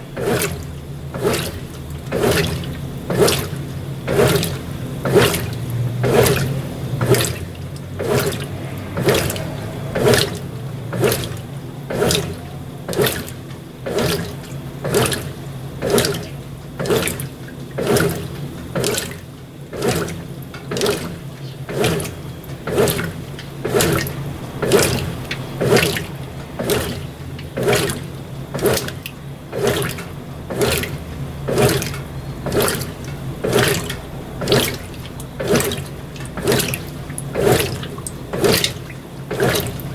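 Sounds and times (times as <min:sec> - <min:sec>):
low motor hum: 0:00.0 - 0:39.9
water swishing in washing machine: 0:00.0 - 0:39.9.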